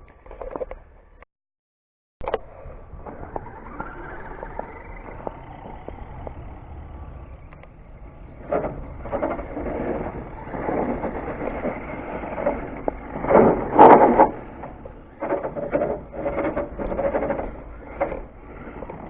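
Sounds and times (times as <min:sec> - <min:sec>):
rc car motor and tyres: 0:00.0 - 0:01.2, 0:02.2 - 0:19.0.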